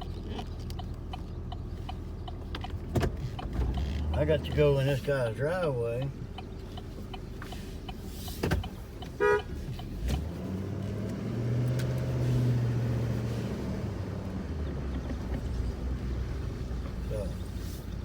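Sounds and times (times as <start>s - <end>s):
truck horn toot: 9.2s - 9.5s.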